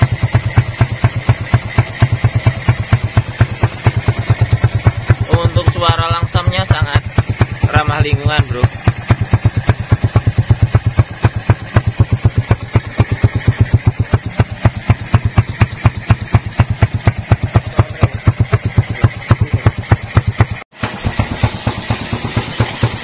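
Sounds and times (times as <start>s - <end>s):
exhaust pops: 0.0s - 23.0s
motorcycle engine idling: 0.0s - 23.0s.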